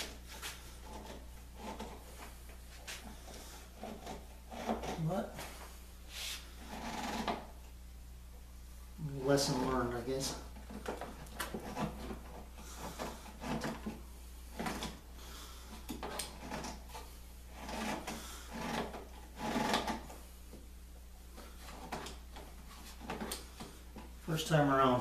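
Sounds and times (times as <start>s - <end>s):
wood scraping and knocking: 0.0s - 5.6s, 9.4s - 15.0s, 15.9s - 20.1s, 21.6s - 24.1s.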